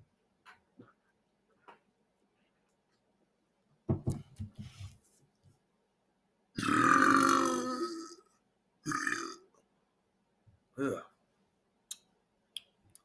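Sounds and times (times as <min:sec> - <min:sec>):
man belching loudly: 0:06.6 - 0:08.3, 0:08.9 - 0:09.4, 0:10.8 - 0:11.1.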